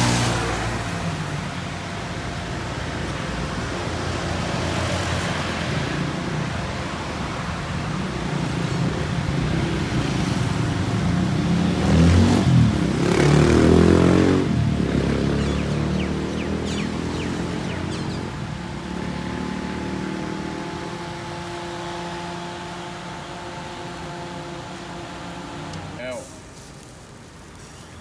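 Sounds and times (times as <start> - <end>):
road traffic: 0.0 - 28.0
vehicle engine rising in pitch: 9.2 - 26.1.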